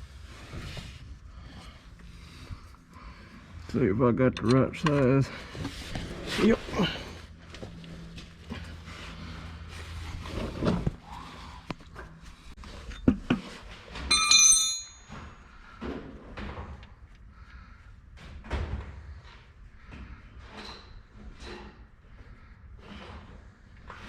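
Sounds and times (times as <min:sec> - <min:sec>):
metal hand tools clanking: 0:14.0 - 0:15.4.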